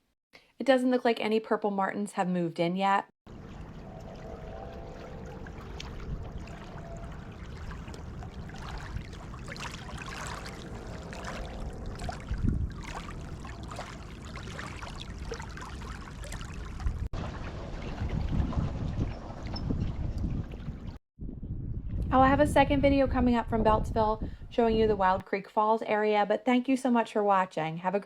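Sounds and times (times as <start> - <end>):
water trickling and splashing: 3.3 - 21.0
wind rumble on microphone: 3.3 - 25.2.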